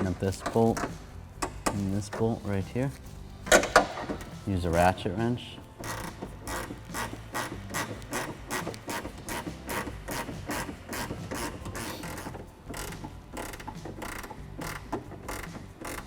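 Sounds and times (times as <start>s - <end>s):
ratchet wrench clicking: 5.8s - 16.0s.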